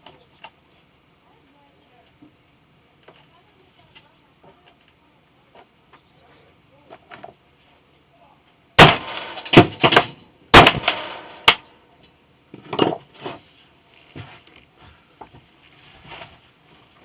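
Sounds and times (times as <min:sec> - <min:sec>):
metal tools clanking on a workbench: 0:08.8 - 0:11.7, 0:12.6 - 0:13.4.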